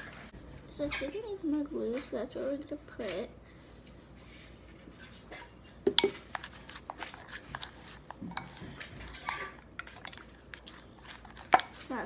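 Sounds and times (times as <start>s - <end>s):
kitchenware clinking and knocking: 5.4s - 6.3s.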